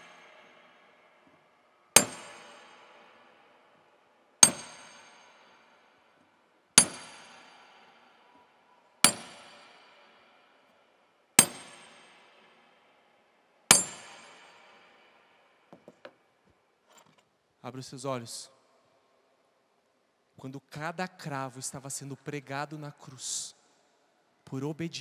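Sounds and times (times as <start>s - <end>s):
hammer striking nail into wood: 2.0s - 2.6s, 4.4s - 5.1s, 6.8s - 7.4s, 9.0s - 9.6s, 11.4s - 11.9s, 13.7s - 14.3s.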